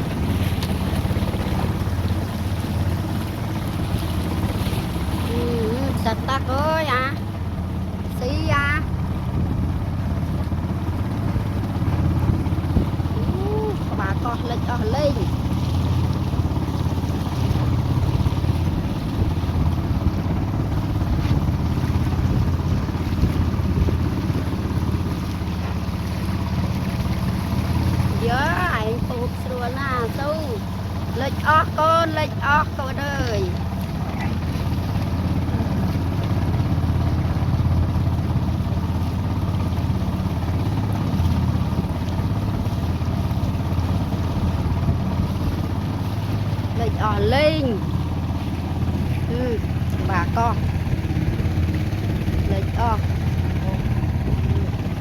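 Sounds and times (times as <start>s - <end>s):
boat engine droning: 0.0s - 55.0s
wind noise on microphone: 17.5s - 24.8s, 53.5s - 55.0s.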